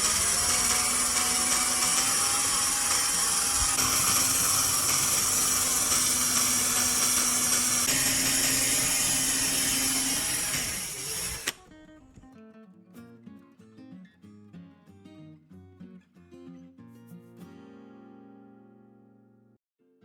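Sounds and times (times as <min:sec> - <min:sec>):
angle grinder grinding: 0:00.0 - 0:11.6.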